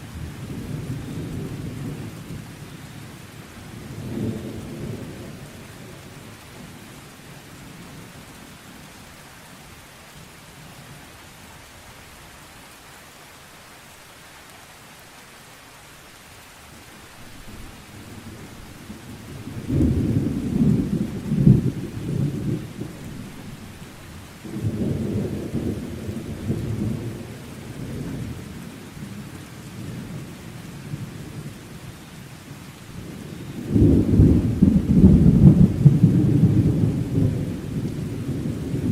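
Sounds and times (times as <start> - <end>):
steady rain: 0.0 - 38.9
rolling thunder: 17.5 - 23.8, 33.0 - 38.9.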